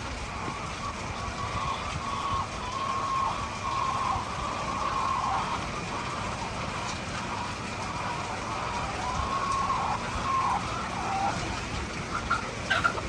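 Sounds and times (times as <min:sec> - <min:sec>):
chickens calling: 0:00.0 - 0:13.0
steady background noise: 0:00.0 - 0:13.0.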